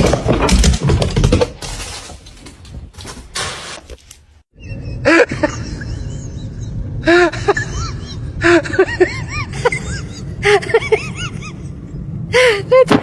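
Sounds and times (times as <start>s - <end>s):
steady low rumble: 5.2s - 12.9s.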